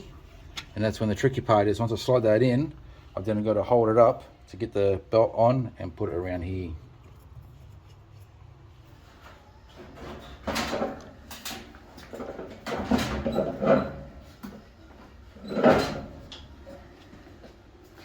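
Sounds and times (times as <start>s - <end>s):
metal drum scraping and knocking: 12.0s - 14.3s, 15.4s - 16.4s.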